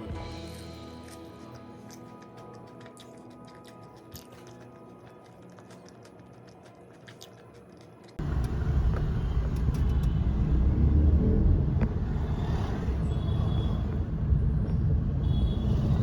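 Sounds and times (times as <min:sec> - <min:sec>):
vehicle road noise rumble: 0:08.2 - 0:16.0.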